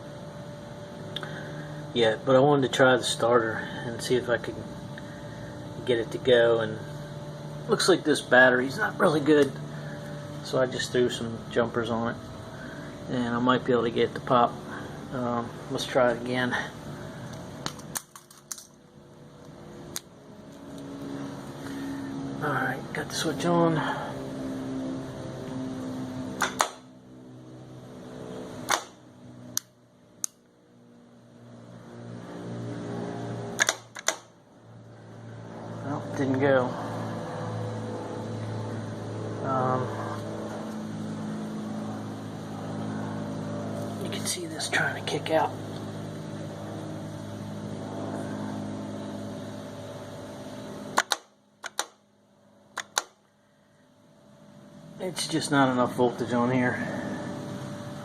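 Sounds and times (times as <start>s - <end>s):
steady low hum: 0.0s - 58.0s
sharp click: 26.4s - 26.8s, 28.7s - 29.0s, 33.6s - 34.3s, 51.0s - 52.0s, 52.8s - 53.2s.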